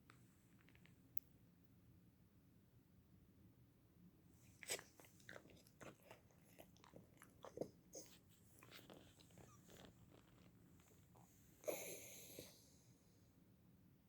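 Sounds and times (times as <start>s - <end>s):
puppy chewing and lip-smacking: 4.5s - 12.7s.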